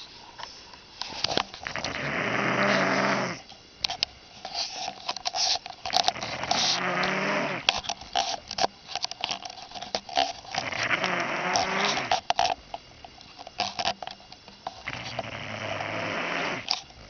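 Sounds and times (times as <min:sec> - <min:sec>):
man snoring: 0:01.7 - 0:03.4, 0:06.2 - 0:07.7, 0:10.6 - 0:12.1, 0:14.9 - 0:16.7.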